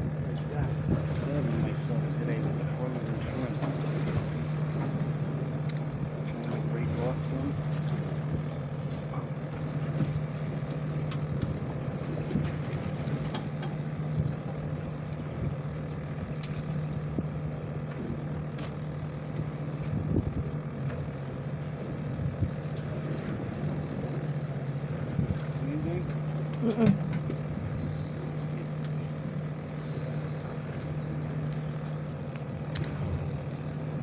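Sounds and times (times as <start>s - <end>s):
boat engine humming: 0.0s - 34.0s
faint ticks: 3.6s - 6.5s, 7.6s - 21.8s, 22.4s - 23.4s, 26.0s - 33.6s.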